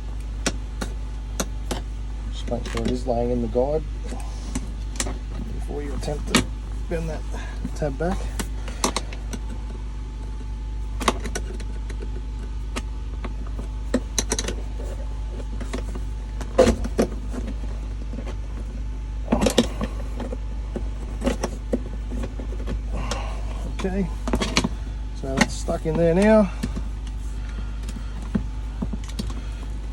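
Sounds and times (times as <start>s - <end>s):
steady low hum: 0.0s - 29.9s.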